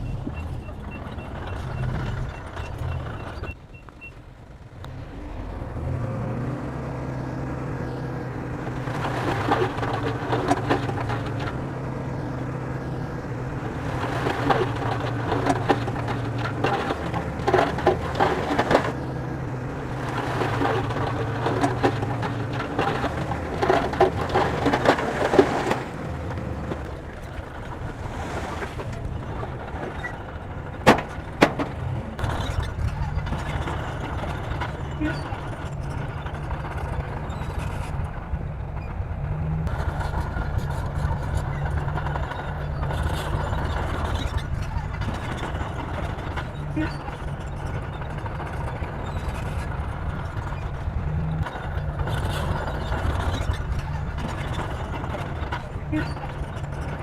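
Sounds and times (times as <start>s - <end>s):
bulldozer diesel engine running: 0.0s - 57.0s
tracks and blade clattering scraping: 8.6s - 38.2s, 39.6s - 57.0s
sharp knocks: 30.8s - 32.0s.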